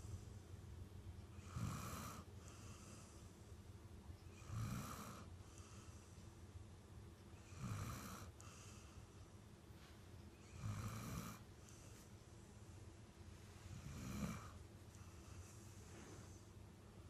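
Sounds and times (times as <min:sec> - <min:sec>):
dog snoring: 0:01.3 - 0:03.2, 0:04.3 - 0:06.1, 0:07.4 - 0:09.0, 0:10.4 - 0:12.0, 0:13.7 - 0:16.4.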